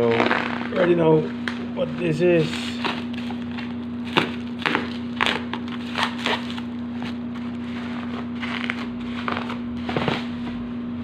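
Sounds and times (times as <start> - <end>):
steady low hum: 0.0 - 11.0
packaging crinkling and scraping: 2.4 - 10.6.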